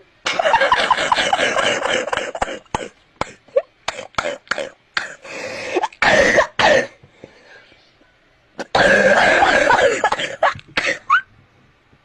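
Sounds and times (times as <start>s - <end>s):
person coughing: 0.3s - 7.0s, 8.6s - 11.2s.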